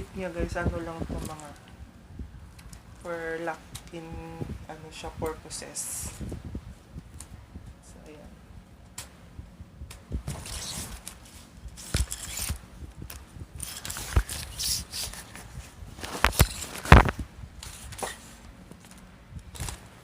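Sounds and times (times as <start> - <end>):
tripod legs sliding and scraping: 10.2 - 19.9.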